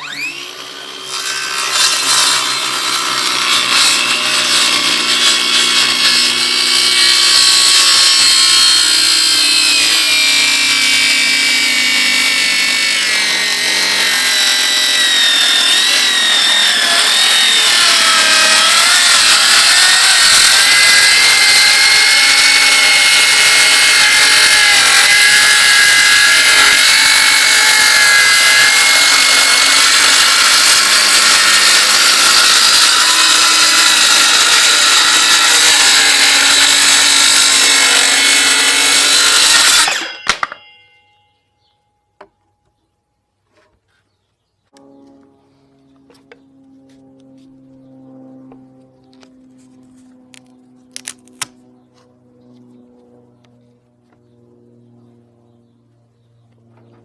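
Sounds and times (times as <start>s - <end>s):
power tool cutting or grinding: 0.0s - 40.7s, 48.4s - 52.1s.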